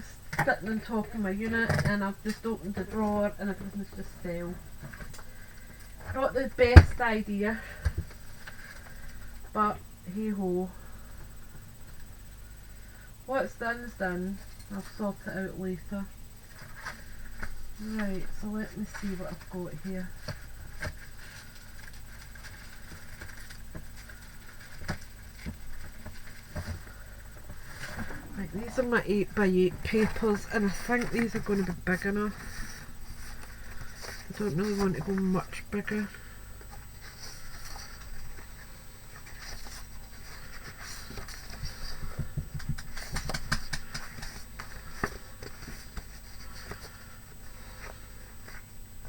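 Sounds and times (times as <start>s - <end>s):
papers rustling: 16.4s - 48.7s
paper rustling with taps: 39.2s - 47.0s.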